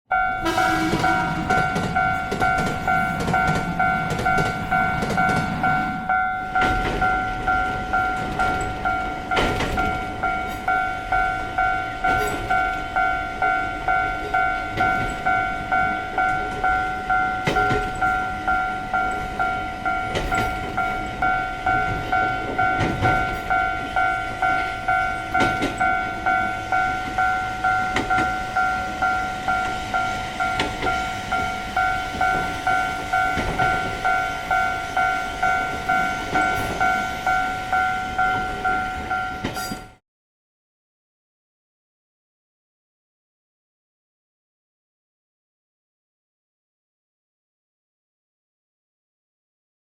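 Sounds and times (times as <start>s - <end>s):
passing train rumble and clatter: 0.1s - 40.0s
railroad crossing bell ringing: 0.1s - 40.0s.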